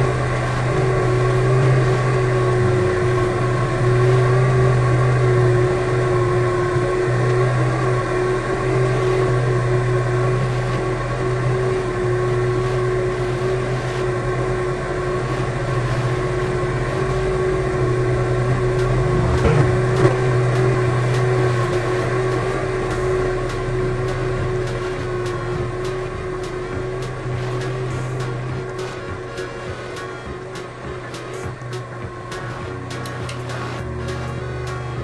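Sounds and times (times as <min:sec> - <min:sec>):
electric fan motor humming: 0:00.0 - 0:35.0.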